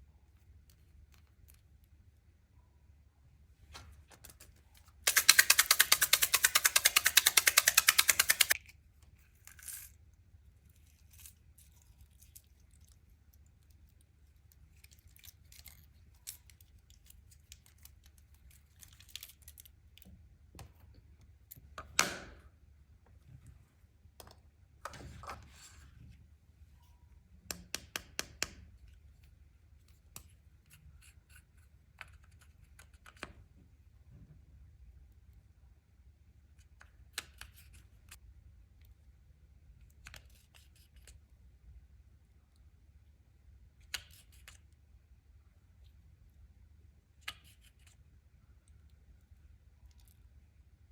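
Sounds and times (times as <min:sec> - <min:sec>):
small clicks and taps: 0:04.1 - 0:08.6.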